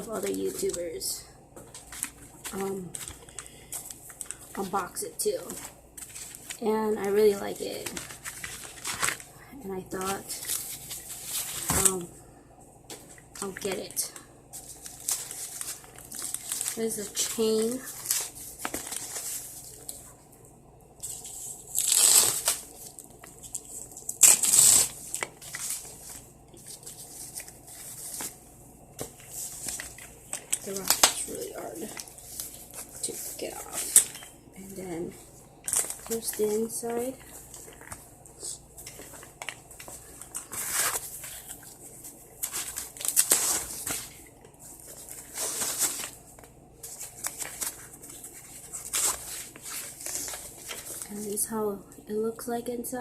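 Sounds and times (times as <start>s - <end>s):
bag and wrapping rustling: 0.0s - 12.1s, 13.0s - 20.2s, 21.0s - 51.5s.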